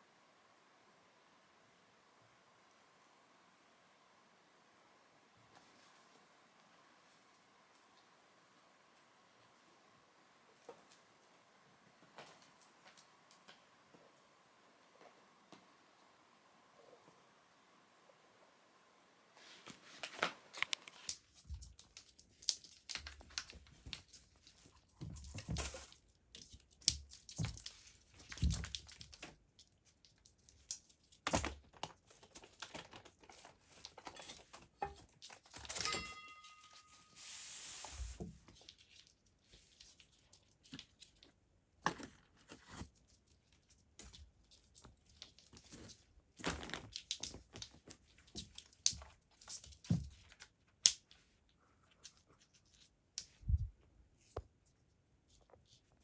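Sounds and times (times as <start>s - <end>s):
material rustling and crinkling: 19.4s - 56.0s
short hiss-like burst: 37.2s - 38.2s.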